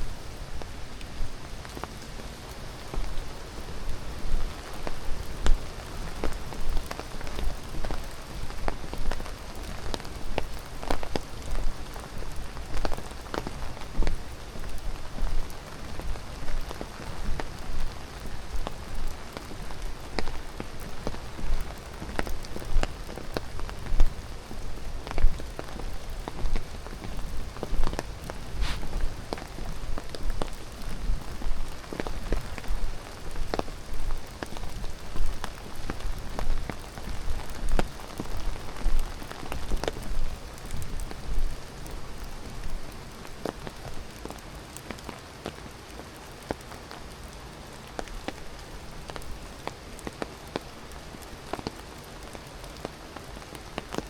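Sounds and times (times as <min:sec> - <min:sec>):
small sharp ticks and crackles: 0:00.0 - 0:54.0
footsteps on forest trail: 0:27.9 - 0:30.5.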